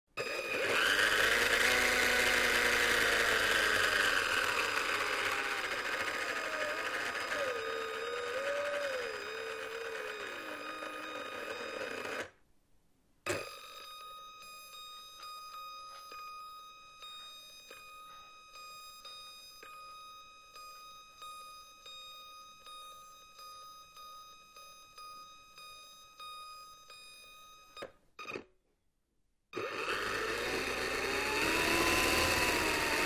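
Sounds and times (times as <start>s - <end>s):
toy plane electric motor whirring: 0.2s - 12.3s, 29.6s - 33.0s.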